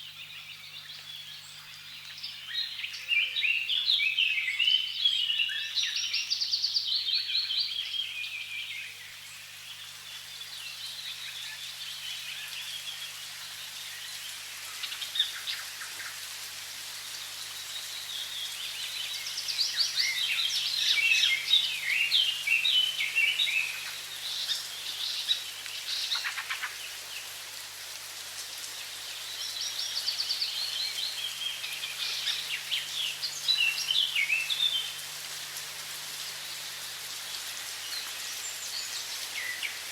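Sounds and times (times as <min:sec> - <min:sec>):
running water: 0:09.2 - 0:39.9
birds twittering: 0:17.0 - 0:27.4, 0:28.9 - 0:39.9.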